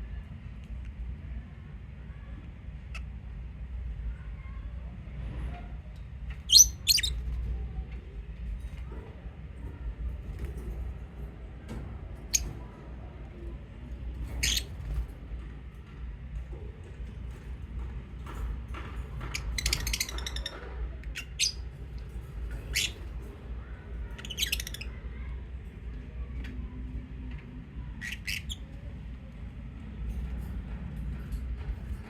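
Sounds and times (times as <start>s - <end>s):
lovebirds chirping and squawking: 6.4s - 7.3s, 12.2s - 12.6s, 14.3s - 15.0s, 19.2s - 25.3s, 27.8s - 28.9s.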